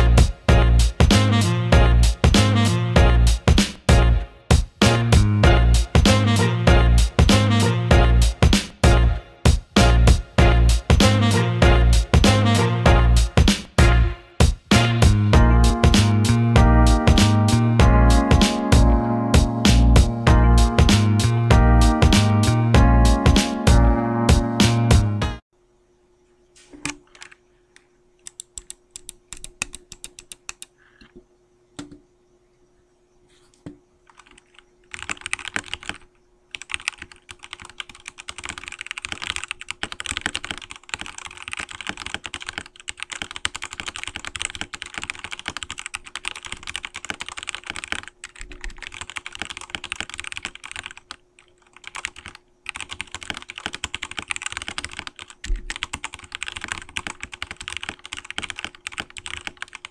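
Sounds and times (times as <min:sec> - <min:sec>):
mechanical keyboard typing: 0:28.2 - 0:30.7, 0:34.1 - 0:59.9.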